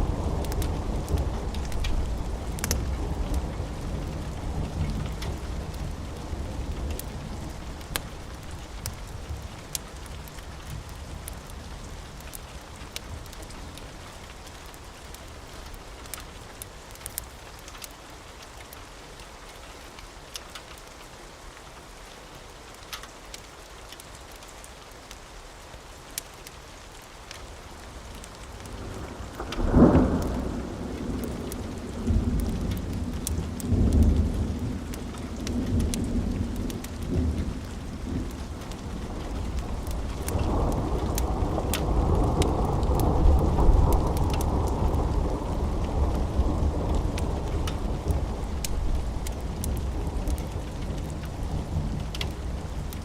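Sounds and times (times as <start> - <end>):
thunderclap and rolling thunder: 0.0 - 10.4, 28.6 - 53.0
steady rain: 0.0 - 53.0.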